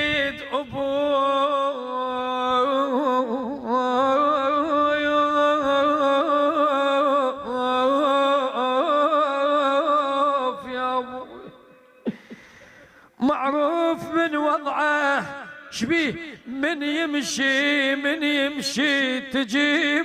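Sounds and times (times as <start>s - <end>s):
man chanting a mourning lament: 0.0s - 12.0s, 13.1s - 20.0s.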